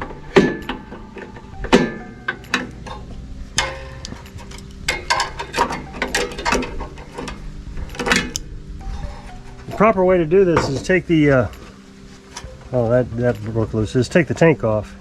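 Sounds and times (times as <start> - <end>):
hand tools clicking and knocking: 0.0 - 8.5.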